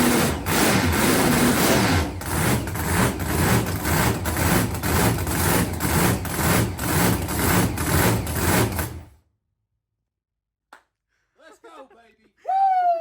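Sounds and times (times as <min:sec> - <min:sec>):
drag car engine idling loudly: 0:00.0 - 0:09.1.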